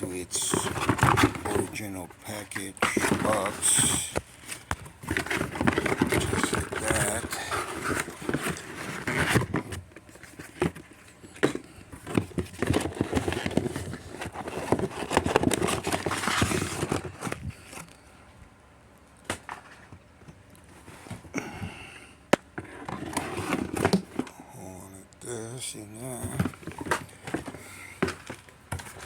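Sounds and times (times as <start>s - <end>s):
packing rustling and scraping: 0.0s - 18.1s, 19.3s - 21.5s, 22.5s - 29.0s
cardboard box handling: 0.3s - 17.9s, 22.5s - 24.3s.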